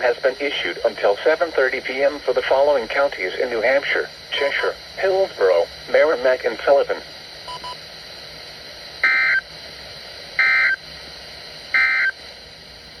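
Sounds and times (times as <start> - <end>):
radio hiss: 0.0 - 13.0
digital data tone bursts: 4.3 - 4.8, 7.5 - 7.8, 9.0 - 9.5, 10.4 - 10.8, 11.7 - 12.2.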